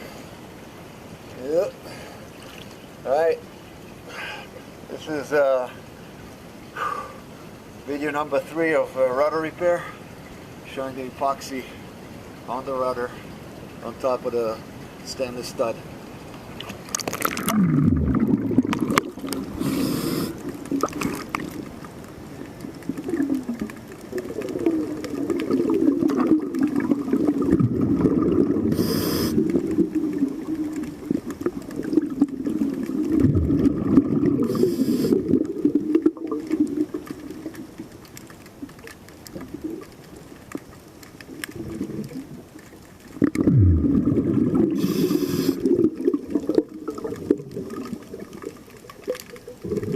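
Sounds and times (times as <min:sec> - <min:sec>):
exhaled air bubbling underwater: 0:16.4 - 0:49.9
regulator inhalation hisses: 0:19.6 - 0:20.4, 0:28.7 - 0:29.4, 0:34.4 - 0:35.2, 0:44.8 - 0:45.6.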